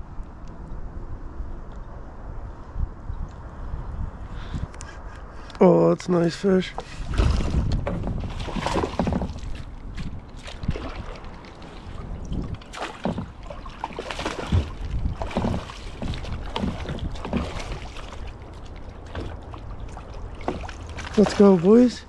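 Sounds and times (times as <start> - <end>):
wind buffeting microphone: 0.0 - 22.0
handling knocks and splashes: 6.7 - 22.0.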